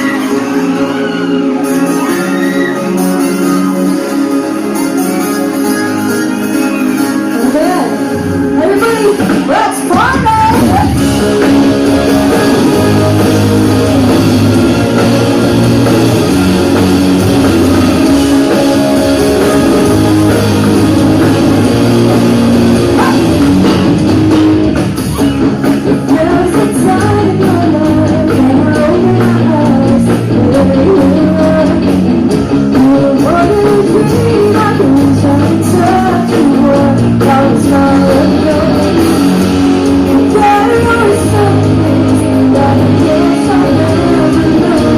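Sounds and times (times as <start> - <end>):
person singing: 0.0 - 14.1, 25.1 - 39.4, 40.1 - 44.9
bass guitar: 0.0 - 44.9
drum kit: 0.0 - 44.9
electric guitar: 0.0 - 44.9.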